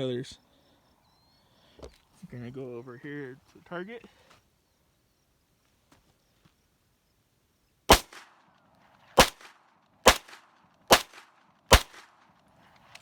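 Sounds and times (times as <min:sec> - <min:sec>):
pistol shots: 0:07.9 - 0:08.4, 0:09.2 - 0:12.3.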